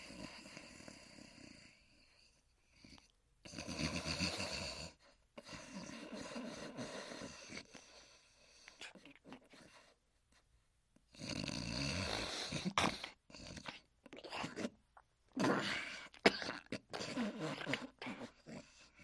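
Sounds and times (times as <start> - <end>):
cartoon snoring: 3.4 - 7.7, 11.1 - 14.8, 15.4 - 19.0.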